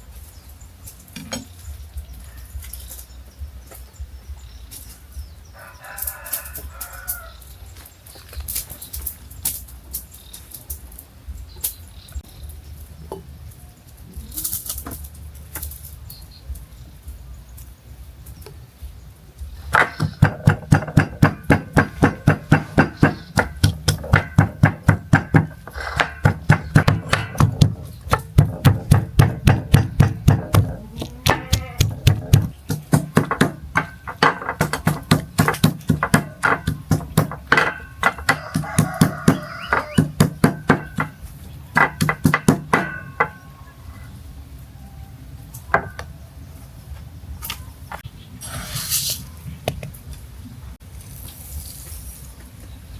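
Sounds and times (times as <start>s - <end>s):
cleaver chopping on wooden board: 19.8s - 41.2s, 41.8s - 43.4s.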